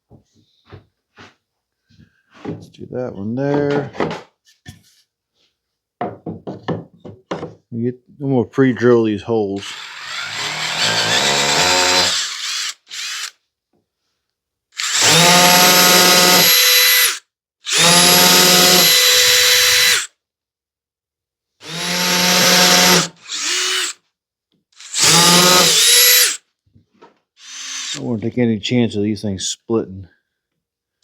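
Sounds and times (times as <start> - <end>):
power drill drilling wood: 9.6 - 13.4, 14.8 - 20.1, 21.6 - 24.0, 24.8 - 26.4, 27.4 - 28.1.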